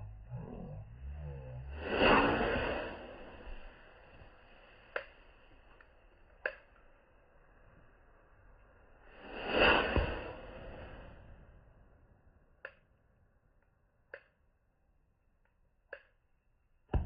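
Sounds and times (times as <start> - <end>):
firework rocket whooshing: 1.7 - 5.4, 9.0 - 11.6.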